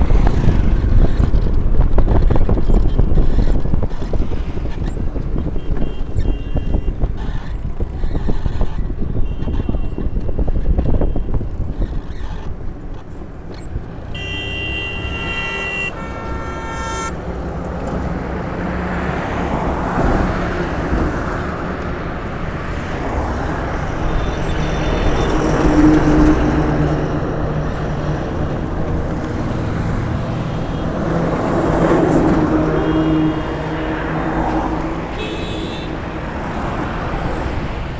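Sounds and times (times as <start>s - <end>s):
road noise: 0.0s - 37.9s
vehicle engine rumble: 0.0s - 37.9s
vehicle horn honking: 5.5s - 7.0s, 9.1s - 10.2s, 14.1s - 17.4s, 32.7s - 33.5s, 35.1s - 36.0s.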